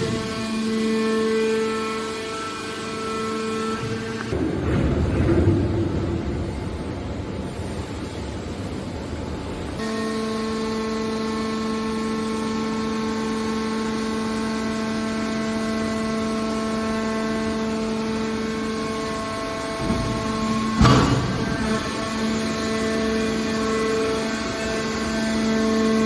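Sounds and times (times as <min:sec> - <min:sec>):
hydraulic pump hum: 0:00.0 - 0:26.0
machinery running: 0:00.0 - 0:26.0.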